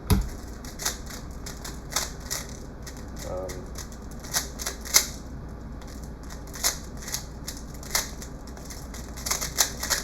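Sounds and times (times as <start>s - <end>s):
puzzle cube plastic clicks: 5.8s - 10.0s.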